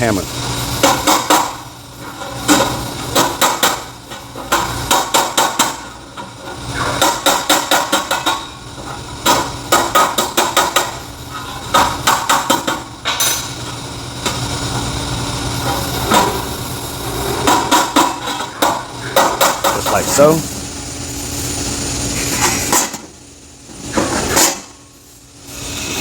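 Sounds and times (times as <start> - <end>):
steady hiss: 0.0 - 26.0
hammer on sheet metal: 0.8 - 1.6, 4.5 - 5.8, 6.8 - 8.5, 9.2 - 11.0.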